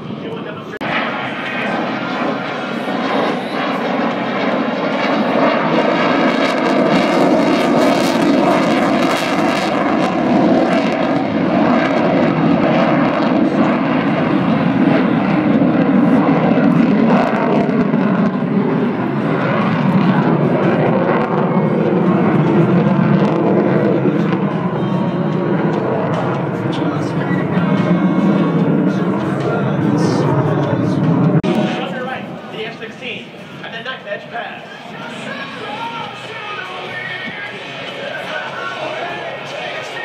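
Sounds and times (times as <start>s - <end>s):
aircraft engine in flight: 0.0s - 40.0s.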